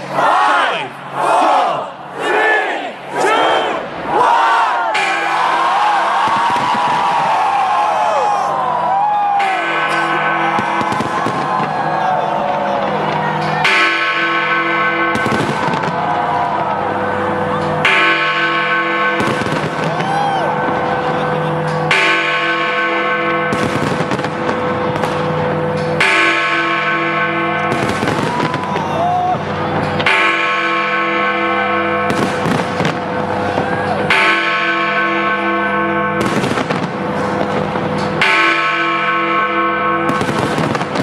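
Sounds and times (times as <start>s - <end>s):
fireworks crackling and banging: 6.1s - 7.8s, 9.4s - 14.2s, 15.0s - 26.9s, 27.6s - 30.9s, 32.1s - 35.0s, 36.2s - 38.7s, 40.0s - 41.0s
deep bell striking: 9.2s - 41.0s.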